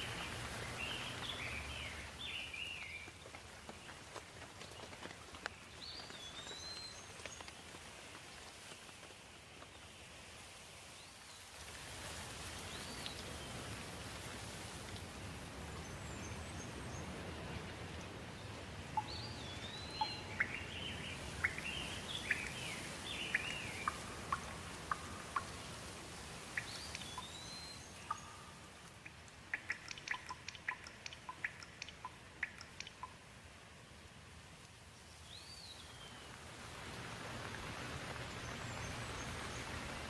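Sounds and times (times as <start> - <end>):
birds singing: 0.0 - 3.2, 15.8 - 25.6, 26.5 - 28.6
steady rain: 0.0 - 40.0.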